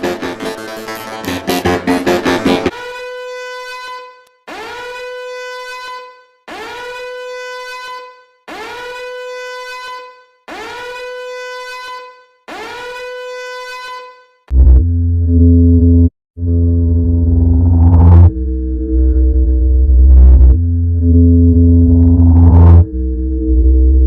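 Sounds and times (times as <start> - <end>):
buzzy electronic alarm beeps: 14.5 - 23.7.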